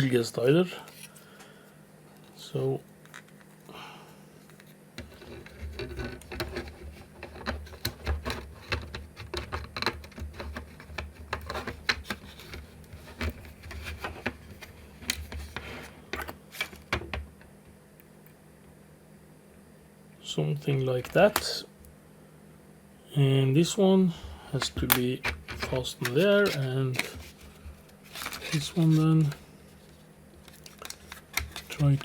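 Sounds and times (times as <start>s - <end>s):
plastic parts clicking and tapping: 4.5s - 17.3s, 30.4s - 32.0s.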